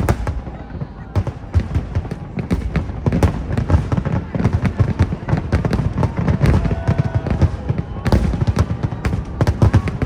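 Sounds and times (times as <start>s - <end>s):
fireworks booming and crackling: 0.0s - 10.0s.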